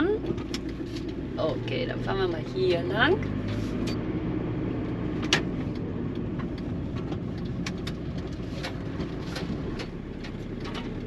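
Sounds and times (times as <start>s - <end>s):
engine and road noise rumble: 0.0s - 11.0s
light ticks and rattles: 5.2s - 11.0s.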